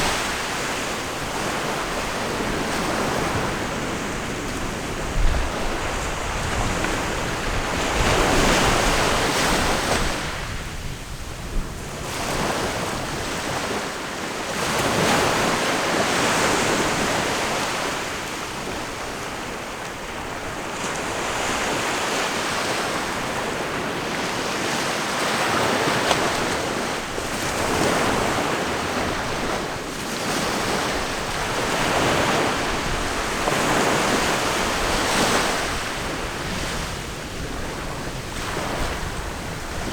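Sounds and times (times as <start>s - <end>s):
ocean waves breaking: 0.0s - 10.6s, 11.9s - 39.9s.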